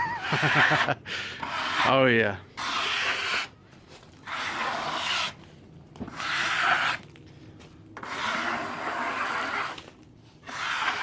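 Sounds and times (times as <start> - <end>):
rough rasping rubbing strokes: 0.0 - 5.4, 6.1 - 7.1, 8.0 - 11.0.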